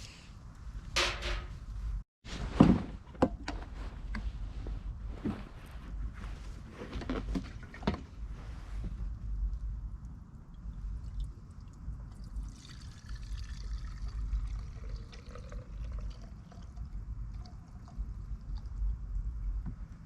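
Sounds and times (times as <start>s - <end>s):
gasoline being poured: 12.2s - 18.0s.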